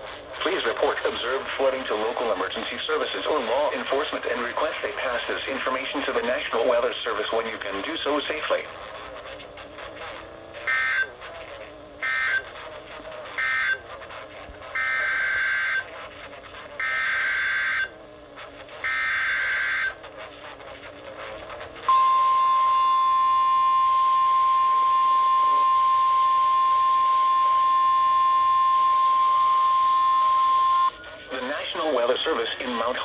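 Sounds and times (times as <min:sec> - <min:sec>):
steady warning alarm tone: 0:00.0 - 0:33.0
warbling data bursts: 0:26.2 - 0:33.0.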